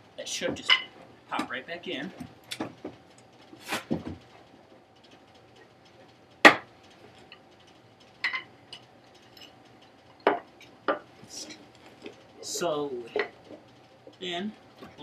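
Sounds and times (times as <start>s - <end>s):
faint steady hum: 0.0s - 15.0s
knocks on wooden stair tread: 3.9s - 4.3s.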